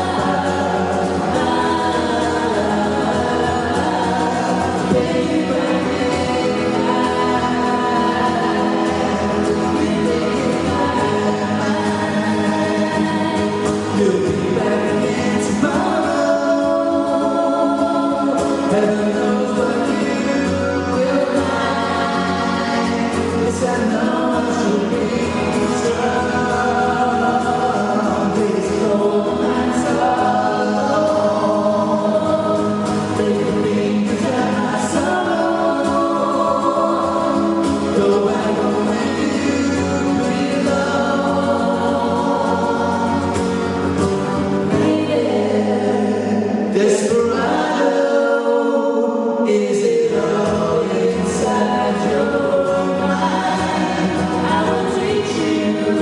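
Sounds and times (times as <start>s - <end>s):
live band playing: 0.0s - 56.0s
voices singing together: 0.0s - 56.0s.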